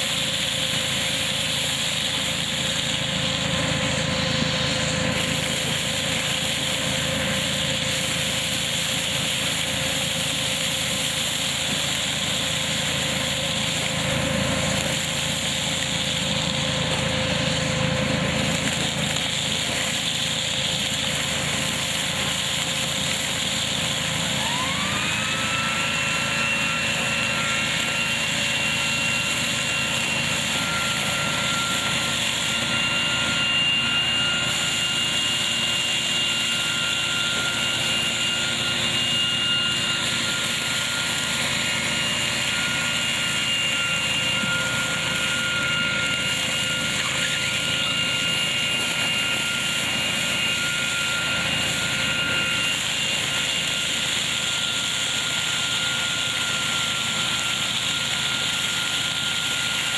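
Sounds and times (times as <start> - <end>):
tractor engine running: 0.0 - 25.3
machine whining tone: 0.0 - 59.9.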